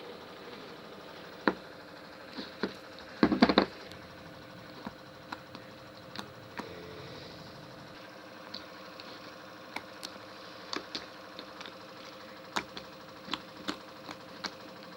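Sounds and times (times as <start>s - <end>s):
background hum: 0.0s - 14.9s.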